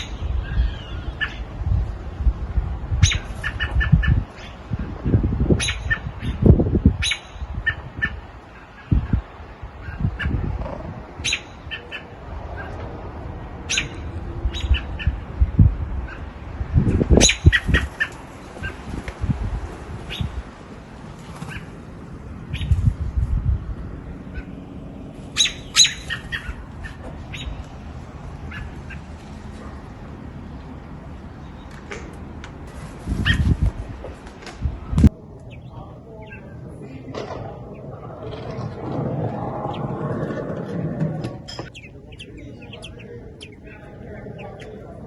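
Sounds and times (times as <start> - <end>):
low thumps and rumbles: 0.0 - 17.8, 18.5 - 45.0
birds chirping: 0.0 - 45.0.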